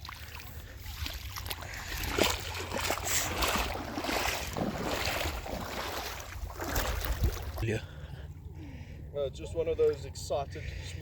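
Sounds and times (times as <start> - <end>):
fish splashing in water: 0.0 - 7.6
wind rumble on microphone: 4.4 - 7.6.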